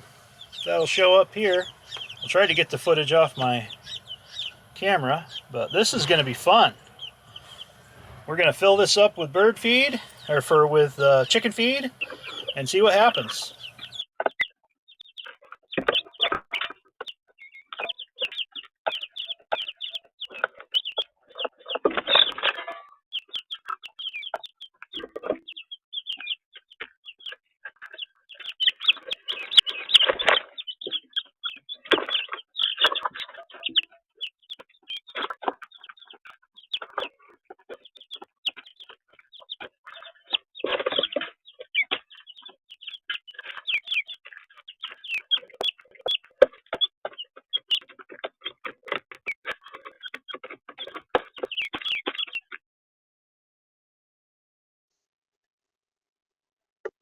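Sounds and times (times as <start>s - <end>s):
chickens clucking: 0.0s - 14.0s.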